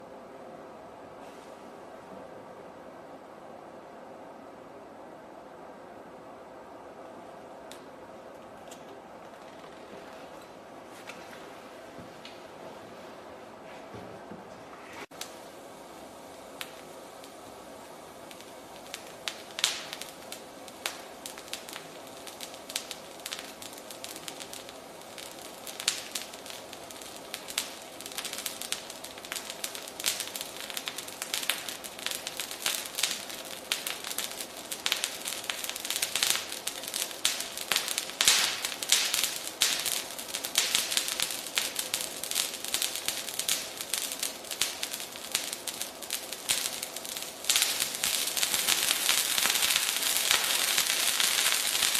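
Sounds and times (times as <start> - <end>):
chemical crackling and popping: 18.2 - 51.9.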